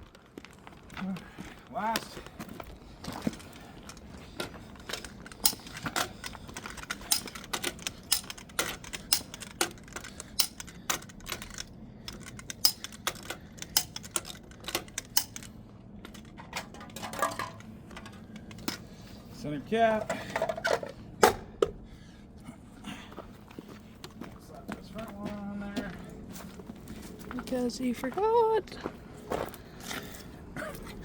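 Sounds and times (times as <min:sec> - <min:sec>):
plastic caps clicking onto lug nuts: 0:04.4 - 0:15.5.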